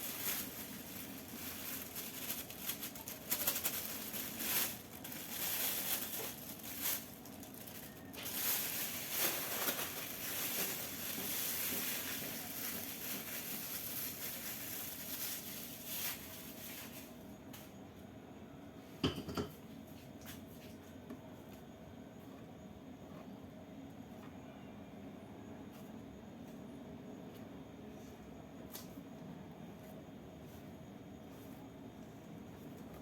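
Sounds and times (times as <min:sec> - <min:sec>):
rustling and scraping in bowl: 0:00.0 - 0:17.1.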